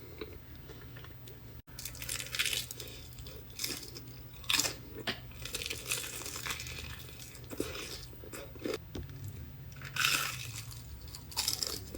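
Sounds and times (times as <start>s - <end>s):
fried chicken crust crunching: 1.7s - 8.8s, 9.7s - 11.9s.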